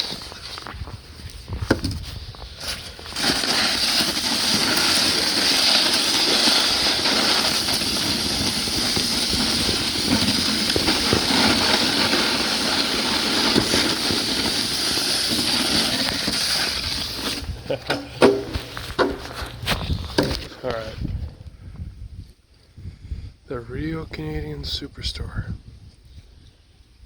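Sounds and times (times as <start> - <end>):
snow shovel scraping pavement: 1.6 - 20.6.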